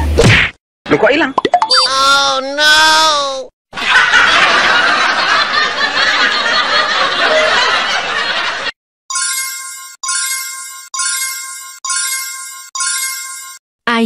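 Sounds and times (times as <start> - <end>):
laughter-like sound effect: 3.8 - 8.7
electronic chime ringing: 9.1 - 13.6.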